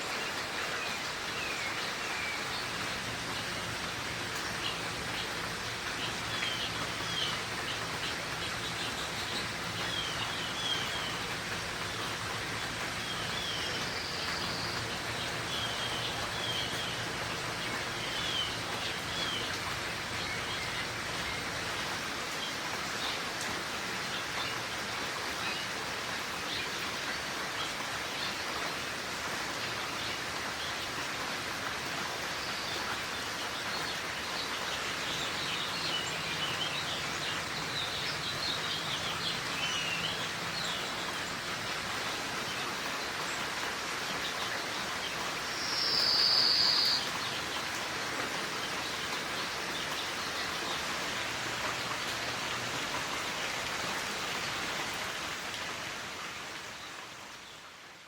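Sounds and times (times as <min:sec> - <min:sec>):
rain hissing: 0:00.0 - 0:58.0
small birds chirping: 0:00.1 - 0:23.2, 0:32.3 - 0:55.5.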